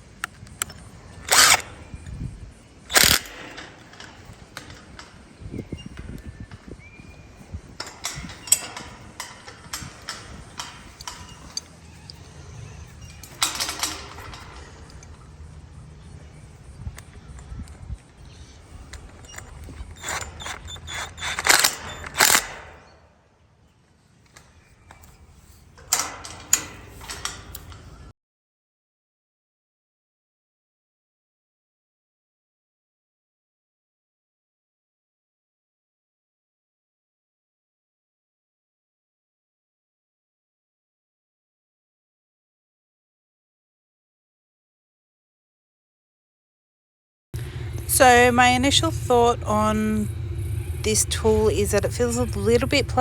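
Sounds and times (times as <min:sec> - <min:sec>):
cordless impact driver bursts: 0:01.3 - 0:01.6, 0:02.9 - 0:03.4, 0:19.4 - 0:22.7
sharp clicks and knocks: 0:02.9 - 0:05.2, 0:18.9 - 0:22.8.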